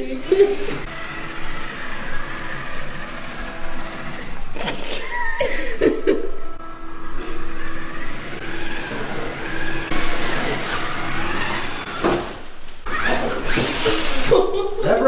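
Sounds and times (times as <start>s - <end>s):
electric motor whirring: 0.0s - 4.6s, 6.7s - 14.6s.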